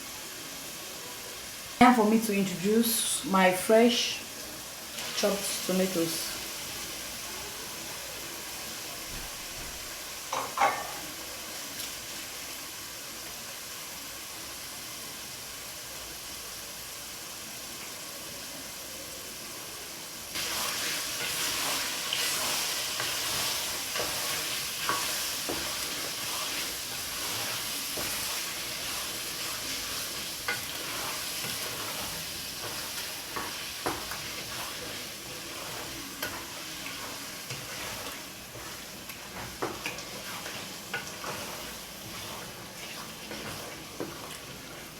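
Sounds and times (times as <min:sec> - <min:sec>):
sauce sizzling in oil: 0:00.0 - 0:44.9
spoon stirring a pot: 0:10.3 - 0:11.1, 0:20.4 - 0:44.9.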